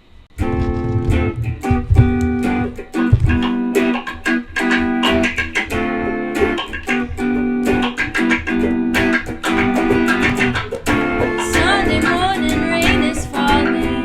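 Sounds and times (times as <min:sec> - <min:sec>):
bass line: 0:00.4 - 0:03.5
guitar picking chords: 0:00.4 - 0:14.0.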